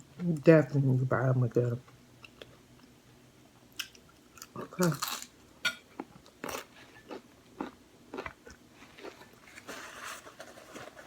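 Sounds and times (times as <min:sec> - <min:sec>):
soft chewing: 0:01.8 - 0:03.0, 0:06.0 - 0:11.0.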